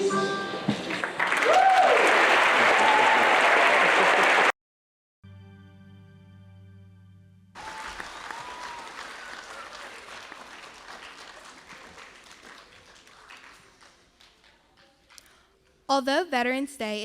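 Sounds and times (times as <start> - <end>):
audience applause: 0.8 - 4.5, 7.6 - 14.8
music sustained chord: 5.2 - 7.5.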